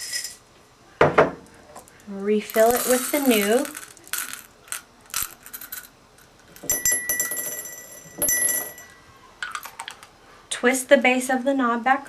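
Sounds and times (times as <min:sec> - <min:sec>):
small hard pieces clicking: 0:01.8 - 0:06.8, 0:09.4 - 0:10.1.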